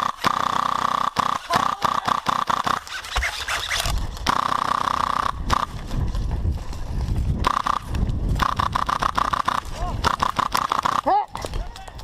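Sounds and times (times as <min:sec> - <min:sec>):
sharp clicks: 0:07.4 - 0:12.0.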